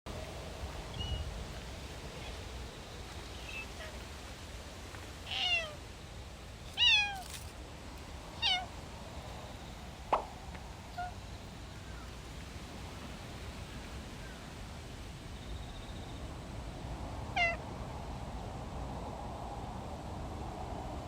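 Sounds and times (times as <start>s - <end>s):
cat meowing: 3.3s - 4.1s, 5.3s - 5.8s, 6.8s - 7.4s, 8.4s - 8.7s, 10.9s - 11.2s, 17.3s - 17.6s.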